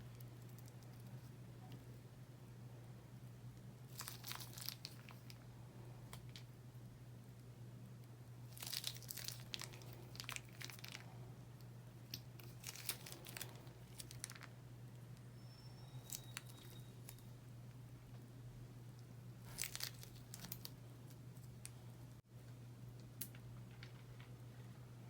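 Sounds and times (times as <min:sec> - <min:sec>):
faint low hum: 0:00.0 - 0:25.0
slime crackling and popping: 0:03.9 - 0:05.4, 0:08.5 - 0:11.1, 0:12.4 - 0:14.5, 0:19.4 - 0:20.7.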